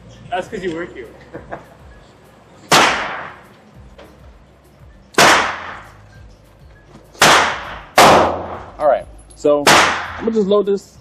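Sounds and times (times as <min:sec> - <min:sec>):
gunshots with long echo: 0:02.7 - 0:03.4, 0:05.2 - 0:05.9, 0:07.2 - 0:08.7, 0:09.7 - 0:10.3.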